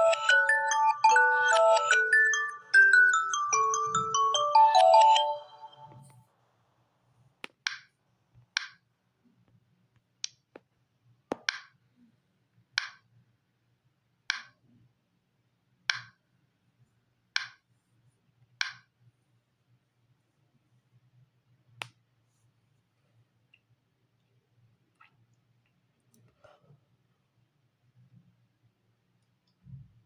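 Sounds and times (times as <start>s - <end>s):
mallet-style alert tone: 0.0s - 6.0s
taps on tablet: 11.3s - 11.8s.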